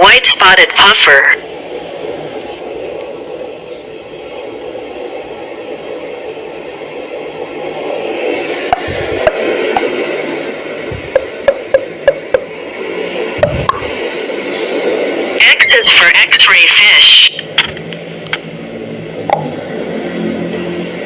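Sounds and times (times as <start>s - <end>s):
steady rushing noise: 0.0s - 21.0s
sharp clicks and taps: 17.5s - 18.5s.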